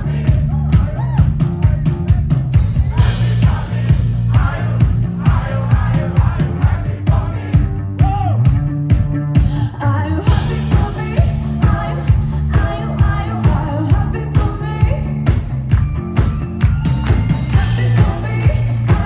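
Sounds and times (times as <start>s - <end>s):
song with drum beat and bass: 0.0s - 19.0s
person singing: 17.5s - 19.0s.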